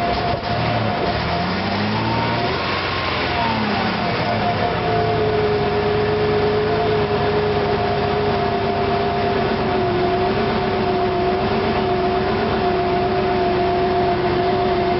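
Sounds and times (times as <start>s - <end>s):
car engine rough idling: 0.0s - 14.9s.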